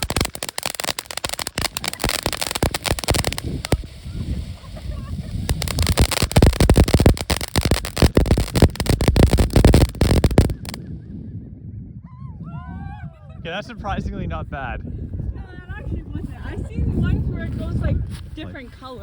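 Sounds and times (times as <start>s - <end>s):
firework fountain crackling: 0.0s - 10.8s.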